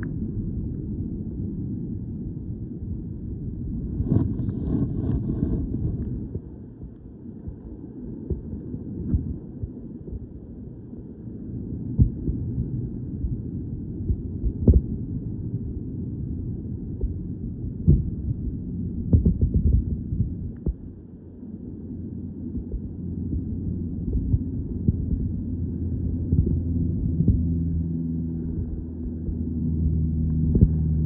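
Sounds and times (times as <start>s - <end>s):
underwater rumbling water wash: 3.7s - 10.4s, 11.6s - 21.6s, 22.2s - 31.0s.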